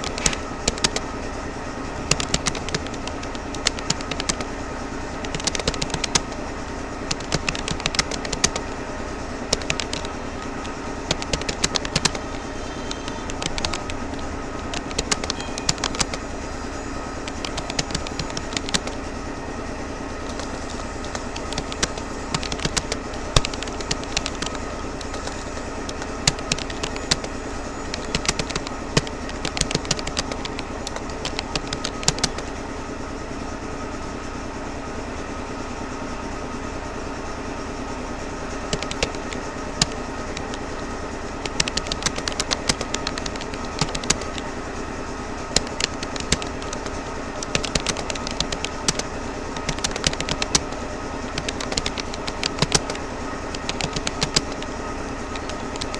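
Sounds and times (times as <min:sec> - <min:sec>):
keyboard keys clicking: 0:00.0 - 0:01.0, 0:02.1 - 0:04.5, 0:05.2 - 0:06.4, 0:07.0 - 0:08.8, 0:09.4 - 0:16.4, 0:17.2 - 0:19.0, 0:20.2 - 0:32.6, 0:38.6 - 0:44.6, 0:45.5 - 0:55.9
background hum: 0:00.0 - 0:55.9.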